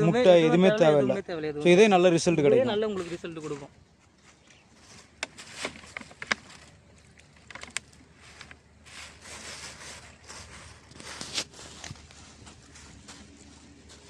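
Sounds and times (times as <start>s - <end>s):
hands mixing bait rustling: 2.9s - 14.0s.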